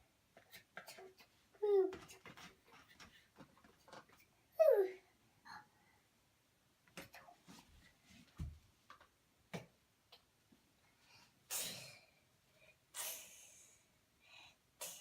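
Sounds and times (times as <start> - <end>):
short hissing noises: 12.9 - 13.9, 14.8 - 15.0.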